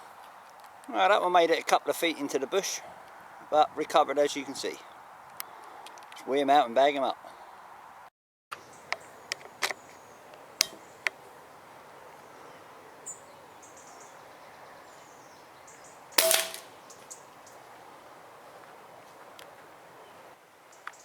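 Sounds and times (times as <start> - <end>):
air rifle shot: 16.2 - 16.7
sharp clicks: 16.2 - 16.7.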